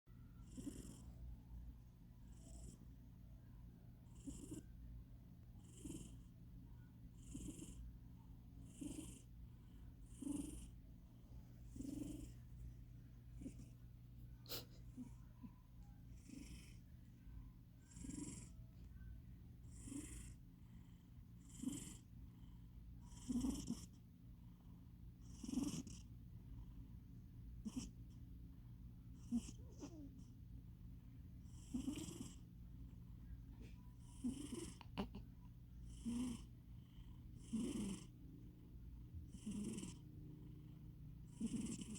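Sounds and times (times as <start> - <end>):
cat snoring with wheeze: 0.4 - 1.2, 2.2 - 2.9, 4.0 - 4.8, 5.6 - 8.0, 8.6 - 10.8, 11.7 - 12.4, 13.4 - 13.8, 16.1 - 16.9, 17.8 - 24.0, 25.1 - 26.8, 27.6 - 28.1, 29.1 - 30.3, 31.4 - 32.5, 34.0 - 35.2, 35.8 - 38.2, 39.1 - 41.9.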